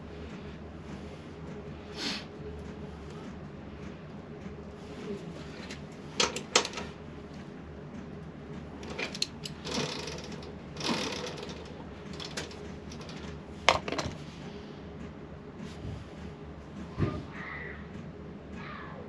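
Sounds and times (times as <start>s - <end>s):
steady background hum: 0.0s - 19.0s.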